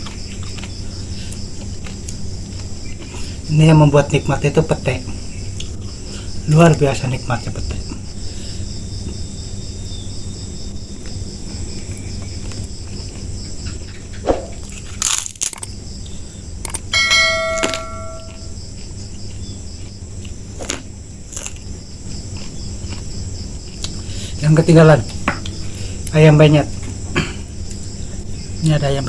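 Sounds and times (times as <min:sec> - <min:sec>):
clicks and crunches of eating: 0:00.0 - 0:03.3, 0:11.9 - 0:16.9, 0:18.6 - 0:24.4
crickets chirping: 0:00.0 - 0:29.0
ringing bell-like tone: 0:16.9 - 0:18.6.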